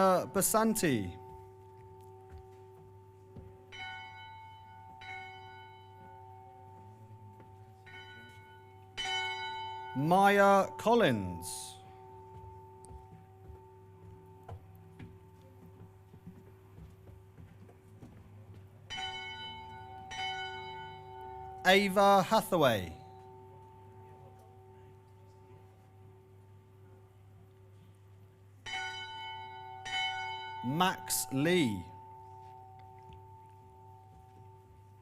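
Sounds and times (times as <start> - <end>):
faint knocks and shuffles: 11.8 - 19.7.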